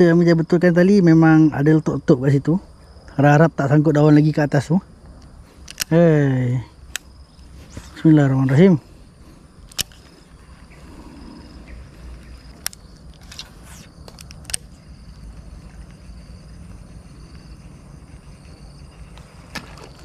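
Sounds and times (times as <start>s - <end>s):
insects buzzing: 0.0s - 20.0s
reel clicks: 5.6s - 6.0s, 9.6s - 10.1s, 12.4s - 14.8s.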